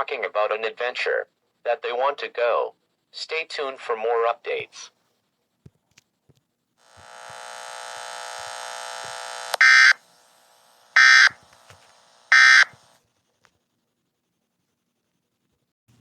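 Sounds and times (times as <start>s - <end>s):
harsh electronic buzz: 6.9s - 13.0s
digital data bursts: 9.6s - 10.0s, 10.9s - 11.4s, 12.3s - 12.8s.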